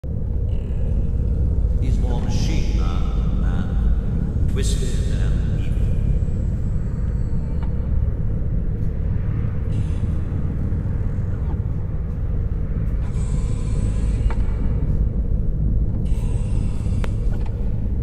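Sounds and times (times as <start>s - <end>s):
steady low rumble: 0.0s - 18.0s
hissing mechanical breaths: 13.0s - 15.0s, 16.0s - 17.6s.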